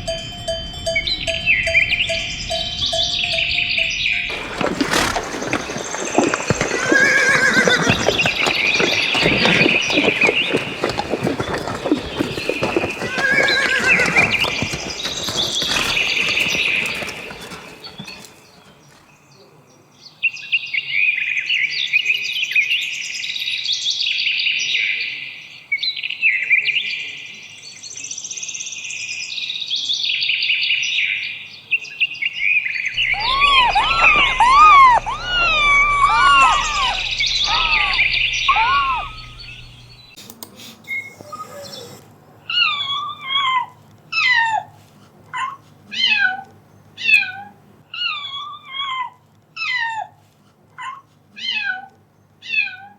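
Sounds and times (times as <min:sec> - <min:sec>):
high chirping birdsong: 0:00.0 - 0:18.9, 0:33.0 - 0:40.2
rising and falling calls: 0:00.9 - 0:11.1, 0:33.0 - 0:40.1.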